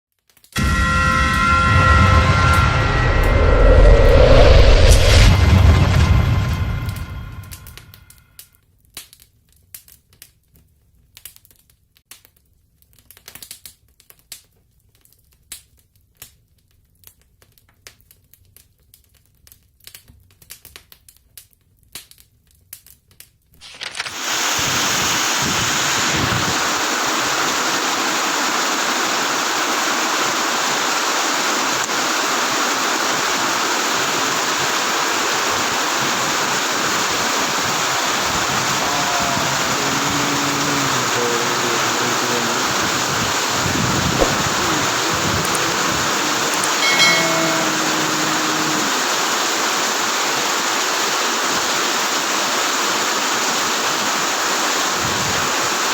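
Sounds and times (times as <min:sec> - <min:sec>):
heavy rain downpour: 0:23.8 - 0:55.9.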